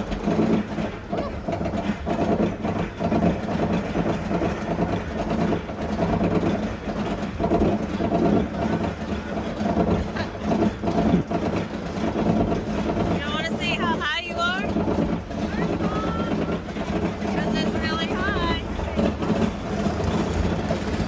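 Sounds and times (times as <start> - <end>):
roller coaster rumbling on track: 0.0 - 21.0.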